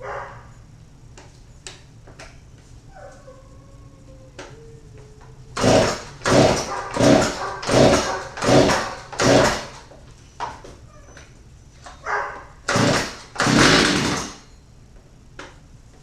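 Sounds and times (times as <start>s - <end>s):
chainsaw starter cord pulls: 5.6s - 9.8s, 12.7s - 14.4s
chainsaw engine turning over: 5.6s - 9.9s, 12.7s - 14.5s.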